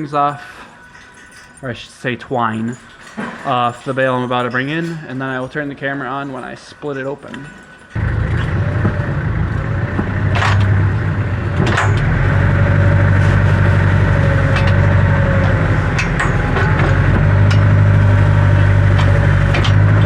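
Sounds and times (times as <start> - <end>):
tractor engine idling: 8.0 - 20.0
sharp knocks and clicks: 8.3 - 9.2, 9.9 - 12.2, 14.4 - 18.0, 18.6 - 20.0.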